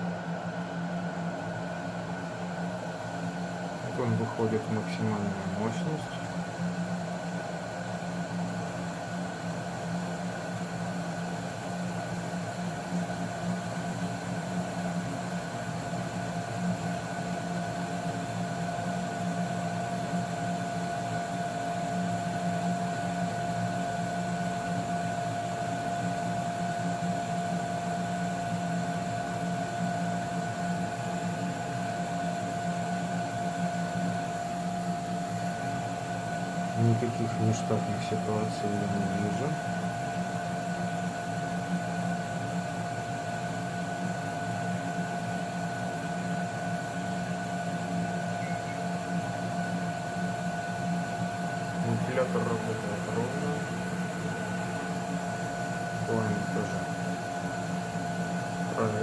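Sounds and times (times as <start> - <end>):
gas boiler humming: 0.0 - 59.0
steady high whine: 0.0 - 59.0.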